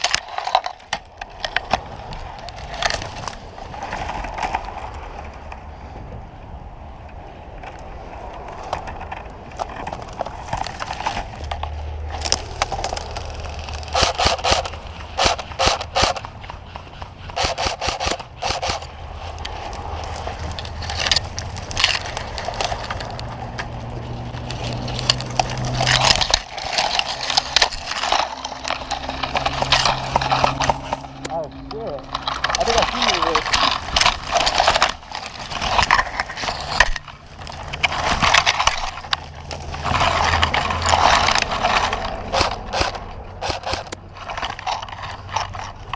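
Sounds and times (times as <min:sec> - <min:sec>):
footsteps in dry leaves: 0:10.7 - 0:42.9.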